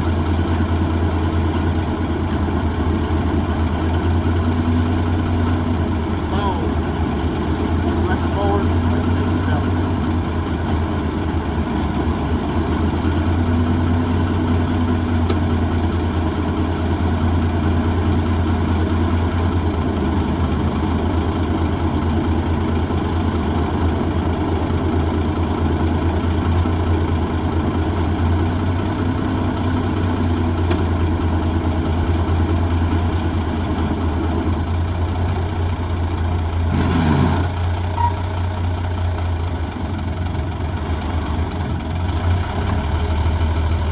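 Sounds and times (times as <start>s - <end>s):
diesel engine idling: 0.0s - 43.9s.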